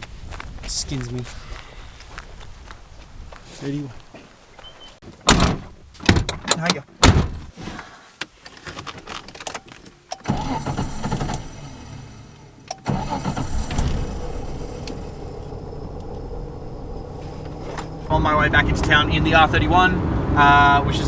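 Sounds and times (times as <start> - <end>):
car engine starting and idling: 10.2 - 21.0.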